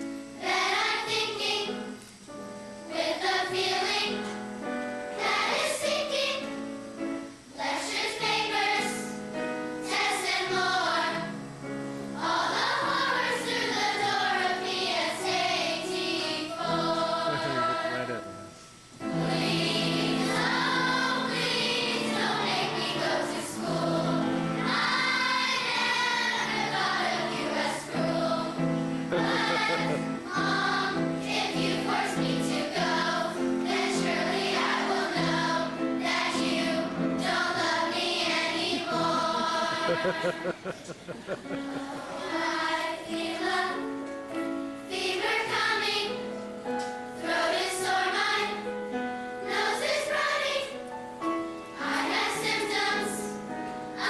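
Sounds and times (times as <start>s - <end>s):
children's choir singing: 0.0s - 2.0s, 2.9s - 6.6s, 7.5s - 9.2s, 9.8s - 11.5s, 12.2s - 18.4s, 19.0s - 46.4s, 47.1s - 54.0s
musical accompaniment: 0.0s - 54.0s.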